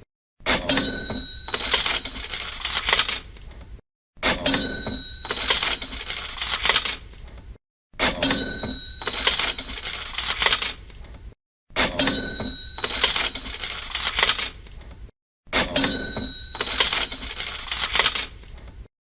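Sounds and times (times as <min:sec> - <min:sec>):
cash register bell ring: 0:00.5 - 0:03.2, 0:04.2 - 0:07.0, 0:08.1 - 0:10.8, 0:11.8 - 0:14.6, 0:15.6 - 0:18.4
cash register clatter: 0:00.5 - 0:03.4, 0:04.2 - 0:07.2, 0:08.0 - 0:11.0, 0:11.8 - 0:14.8, 0:15.6 - 0:18.6
coins jingling: 0:01.4 - 0:03.4, 0:05.2 - 0:07.1, 0:08.7 - 0:11.0, 0:12.6 - 0:14.7, 0:15.9 - 0:18.5.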